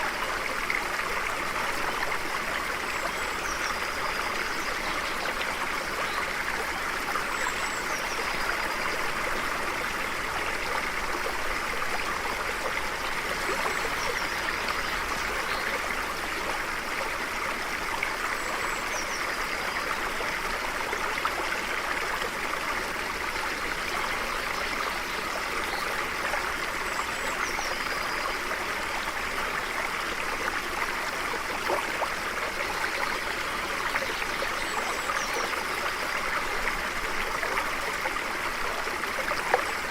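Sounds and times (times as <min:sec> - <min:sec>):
stream flowing over rocks: 0:00.0 - 0:39.9.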